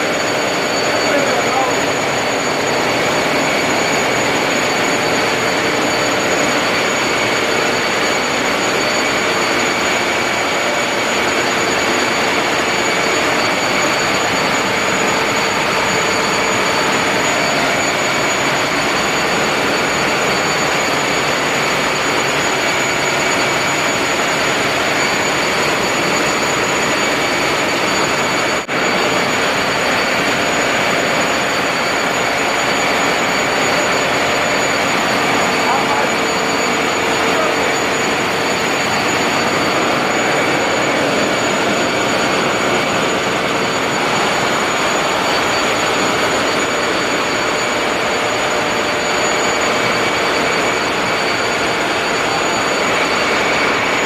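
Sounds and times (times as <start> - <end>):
engine-room machinery noise: 0.0 - 54.0
high mechanical whine: 0.0 - 54.0.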